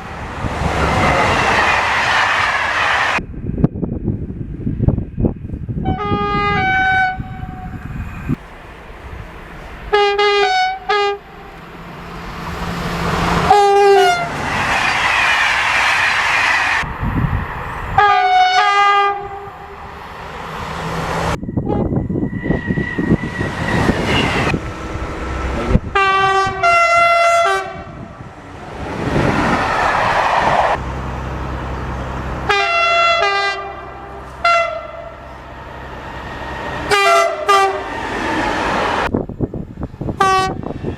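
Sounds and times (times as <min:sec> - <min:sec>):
trains rushing and rumbling by: 0:00.0 - 0:40.9
short train horn blasts: 0:05.8 - 0:07.8, 0:09.9 - 0:11.4, 0:13.4 - 0:14.4, 0:18.0 - 0:19.7, 0:25.9 - 0:28.1, 0:32.5 - 0:35.2, 0:36.9 - 0:37.9, 0:40.2 - 0:40.7.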